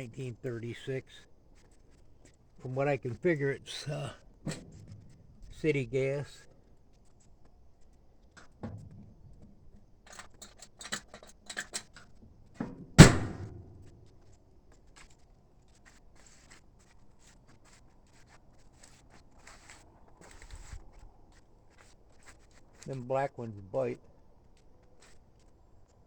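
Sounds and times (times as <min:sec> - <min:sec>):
light metal clicks and knocks: 0:08.4 - 0:14.0
loud metallic clang: 0:13.0 - 0:13.9.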